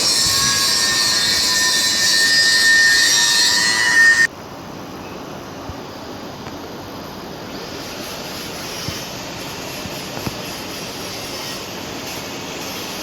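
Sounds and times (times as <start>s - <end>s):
welding hiss: 0.0s - 4.3s, 7.4s - 13.0s.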